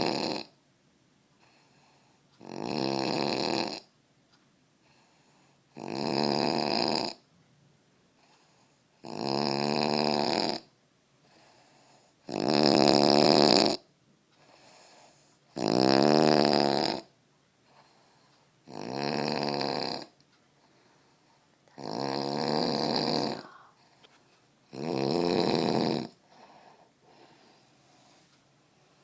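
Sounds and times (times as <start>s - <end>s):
man snoring: 0.0s - 0.6s, 2.4s - 3.9s, 5.7s - 7.2s, 9.0s - 10.7s, 12.2s - 13.8s, 15.5s - 17.1s, 18.6s - 20.2s, 21.7s - 23.7s, 24.7s - 26.2s.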